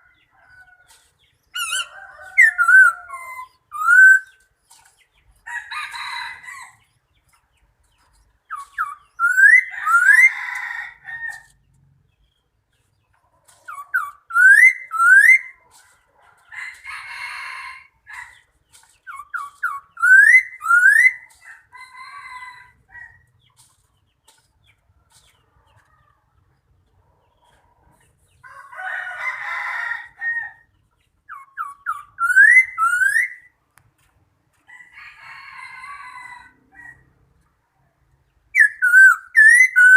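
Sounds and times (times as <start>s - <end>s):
raspy bird calls: 0.0s - 6.8s, 7.9s - 11.6s, 12.7s - 15.8s, 16.4s - 25.3s, 31.2s - 33.5s, 38.5s - 39.9s
bird whistling calls: 1.6s - 4.4s, 8.5s - 10.4s, 13.7s - 15.6s, 19.1s - 21.3s, 31.3s - 33.5s, 38.6s - 39.9s.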